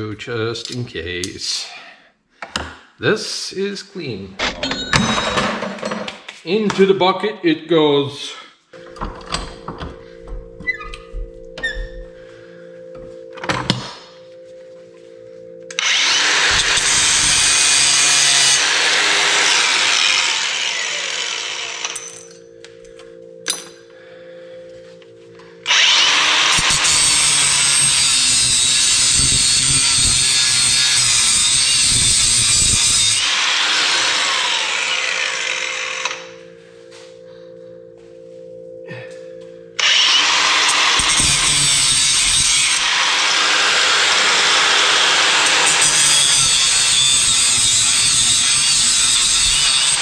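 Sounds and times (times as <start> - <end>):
power tool cutting metal: 15.7 - 22.3, 25.6 - 36.4, 39.8 - 50.0.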